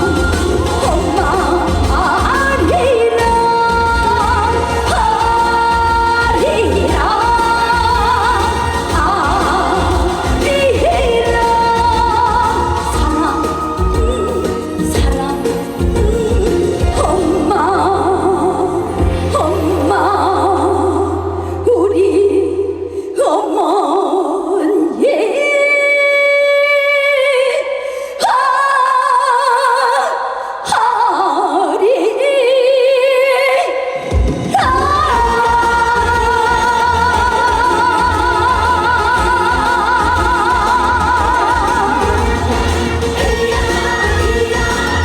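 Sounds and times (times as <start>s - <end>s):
woman singing with vibrato: 0.0s - 45.0s
band playing low beat: 34.2s - 45.0s.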